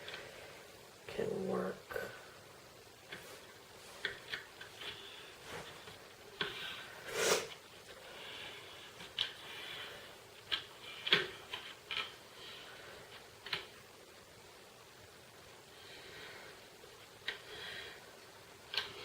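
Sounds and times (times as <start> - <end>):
string rubbing hiss: 6.4 - 10.1.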